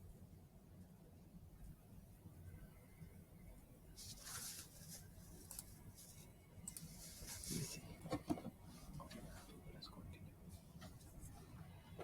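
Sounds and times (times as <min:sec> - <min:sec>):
faint rustling: 0:04.0 - 0:07.9.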